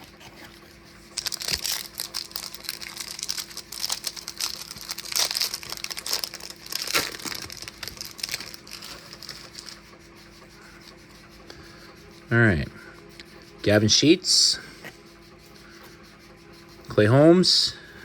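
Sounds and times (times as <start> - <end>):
foil wrapper tearing and crinkling: 1.2 - 9.8.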